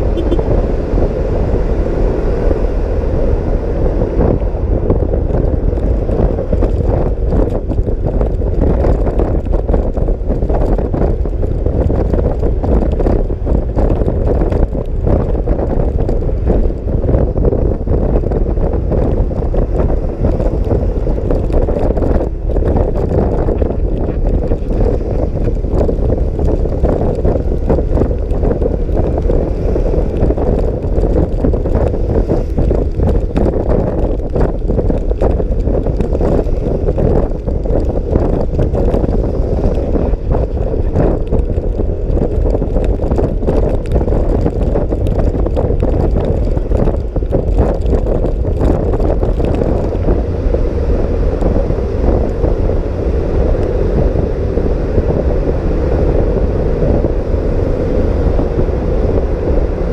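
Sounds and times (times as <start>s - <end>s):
road noise: 0.0s - 59.9s
wind buffeting microphone: 0.0s - 59.9s.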